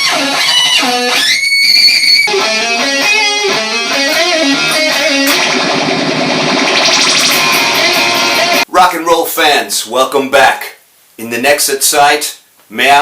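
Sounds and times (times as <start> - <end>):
electric guitar playing: 0.0 - 8.7.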